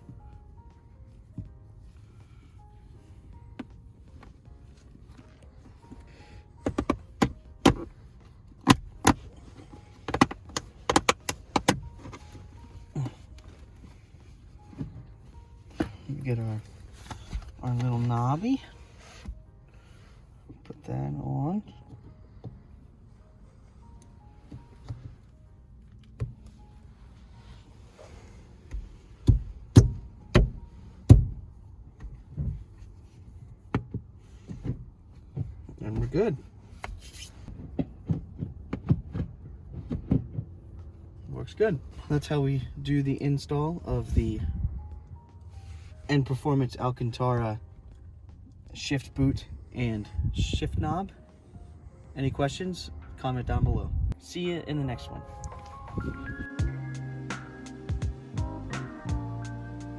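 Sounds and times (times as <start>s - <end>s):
gear lever clunking: 5.1s - 13.8s, 28.7s - 31.4s.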